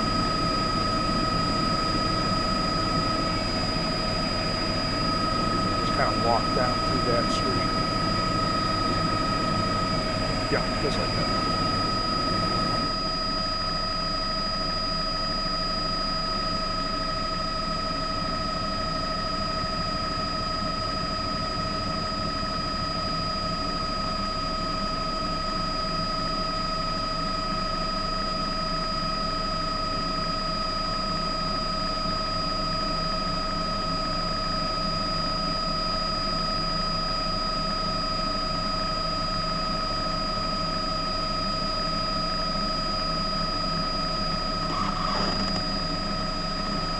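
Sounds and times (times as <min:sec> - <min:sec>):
high steady whine: 0:00.0 - 0:23.1, 0:33.4 - 0:46.9
helicopter engine and rotor drone: 0:00.0 - 0:46.9.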